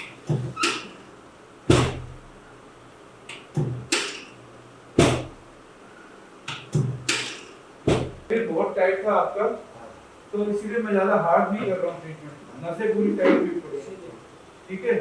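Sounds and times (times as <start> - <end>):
sharp thumps: 1.7 - 2.3, 5.0 - 5.4, 6.5 - 8.3.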